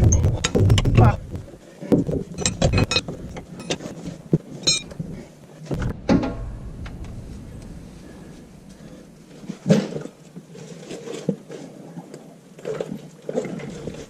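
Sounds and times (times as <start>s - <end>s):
metal axle clunks and knocks: 5.7s - 7.7s.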